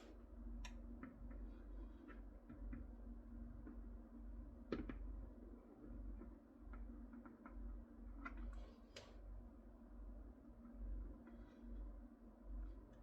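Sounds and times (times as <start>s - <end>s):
low steady hum: 0.0s - 13.0s
light clicks and taps: 6.1s - 9.2s.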